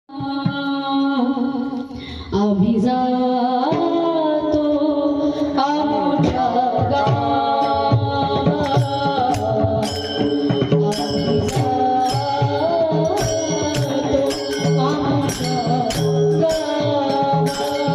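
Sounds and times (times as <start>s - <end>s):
woman singing devotional melody: 0.1s - 17.9s
jingling hand percussion: 7.0s - 17.9s.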